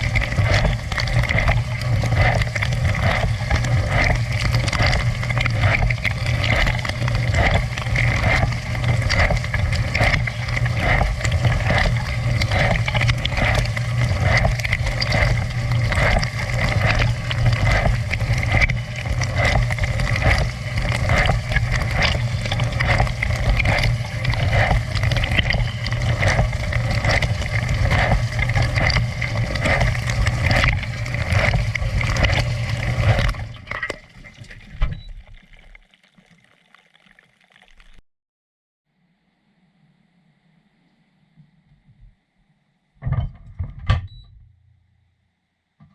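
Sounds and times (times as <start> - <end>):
dishwasher pump motor humming: 0.0 - 35.1
water spraying and splashing: 0.0 - 38.0.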